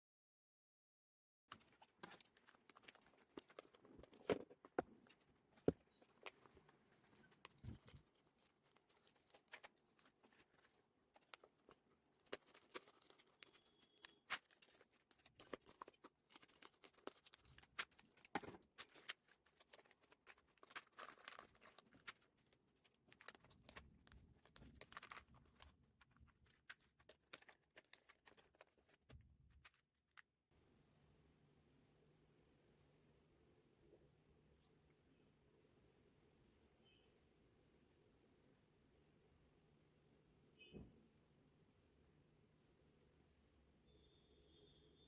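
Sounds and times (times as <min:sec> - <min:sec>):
packaging crinkling: 0:01.6 - 0:29.8.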